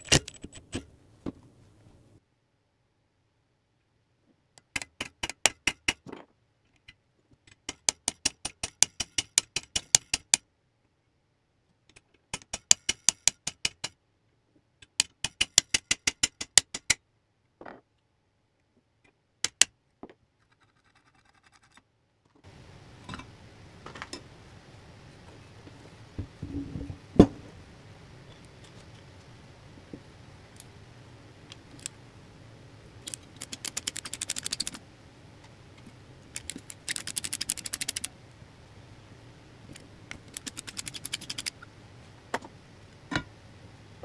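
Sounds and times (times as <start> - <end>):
low steady hum: 22.4 - 44.0
rapid metallic clicking: 33.0 - 34.8, 36.3 - 38.1, 40.1 - 41.6.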